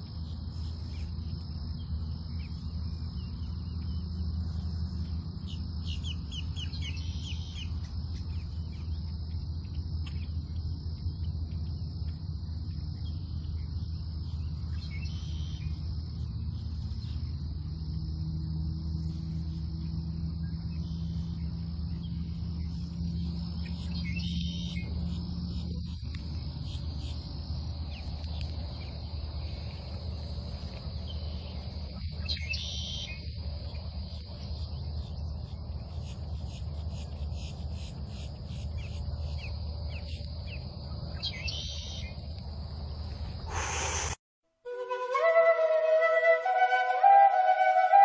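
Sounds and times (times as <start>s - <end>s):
continuous low hum: 0.0s - 44.1s
insects chirring: 0.0s - 48.0s
short bird calls: 43.5s - 44.2s.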